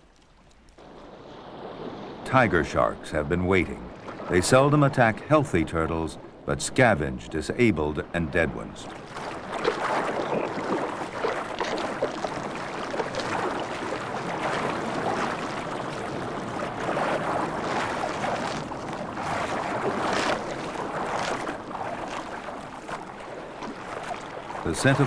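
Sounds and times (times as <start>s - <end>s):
water splashing and churning: 0.0s - 25.0s
sharp splash: 8.9s - 25.0s.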